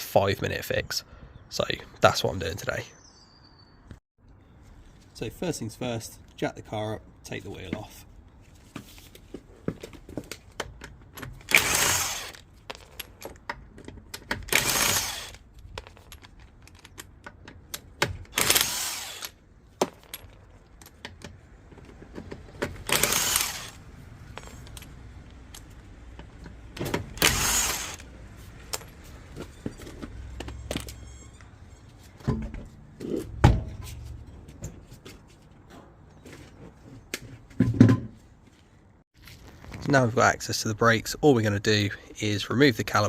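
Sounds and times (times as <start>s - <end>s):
power tool undoing wheel nuts: 11.2s - 13.4s, 14.0s - 16.3s, 17.7s - 19.4s, 21.1s - 25.0s, 26.7s - 28.8s
metallic clicks of nuts and tools: 24.3s - 26.6s.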